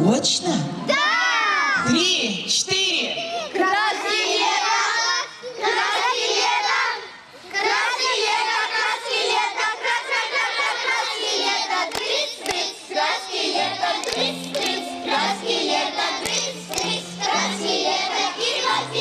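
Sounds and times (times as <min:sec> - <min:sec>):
children singing in chorus: 0:03.7 - 0:19.0
sharp claps: 0:11.9 - 0:12.7, 0:14.0 - 0:14.9, 0:16.2 - 0:17.0.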